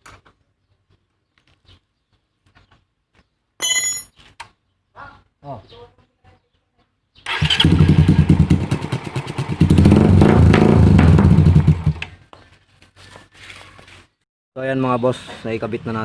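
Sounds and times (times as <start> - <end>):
motorcycle engine revving: 7.3 - 12.2.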